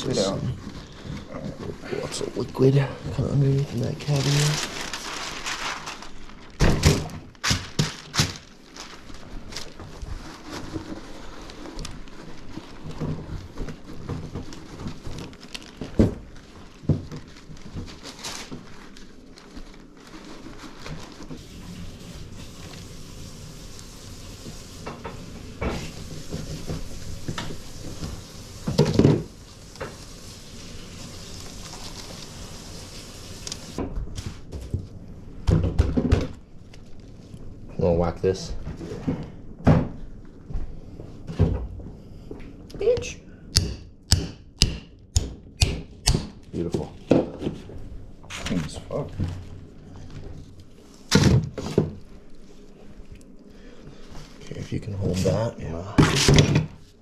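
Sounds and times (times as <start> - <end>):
rustling and wet scraping: 0.0 - 35.1, 46.6 - 55.5.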